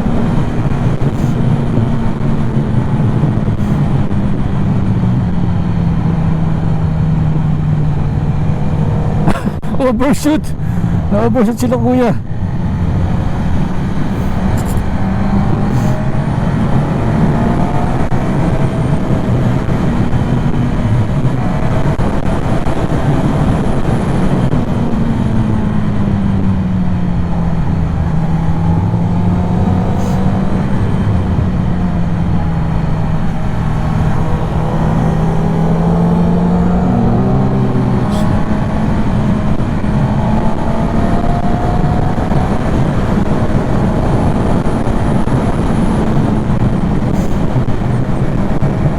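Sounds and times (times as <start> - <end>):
wind rush on microphone: 0.0 - 48.9
motorcycle engine running: 12.2 - 48.9.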